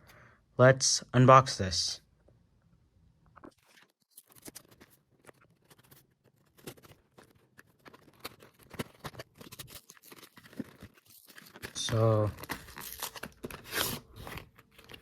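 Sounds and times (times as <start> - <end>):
hands scratching cardboard box: 4.3 - 15.0.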